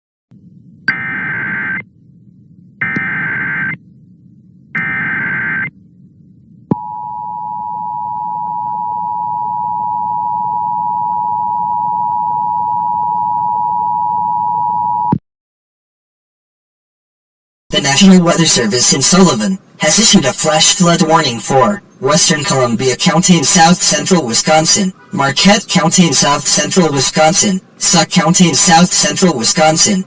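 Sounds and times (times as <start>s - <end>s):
steady dual tone alert signal: 0.9s - 1.9s, 2.8s - 3.8s, 4.8s - 5.8s, 6.7s - 15.1s
digital header bursts: 2.8s - 3.8s, 4.8s - 5.7s.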